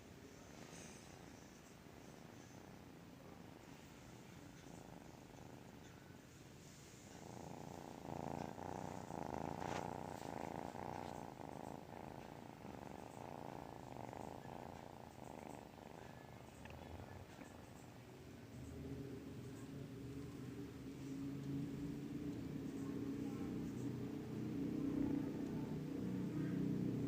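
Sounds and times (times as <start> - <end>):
kitten snoring: 0.4 - 17.8.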